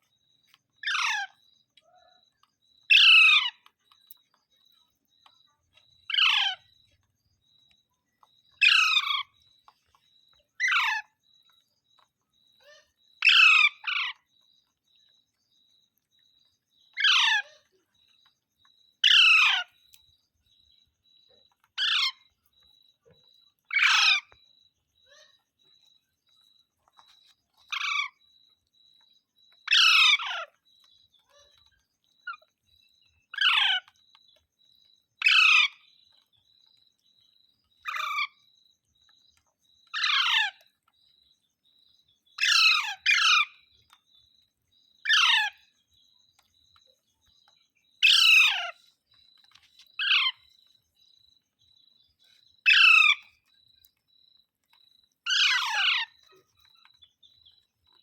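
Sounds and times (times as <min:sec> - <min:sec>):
parrot screeching: 0:55.3 - 0:56.2.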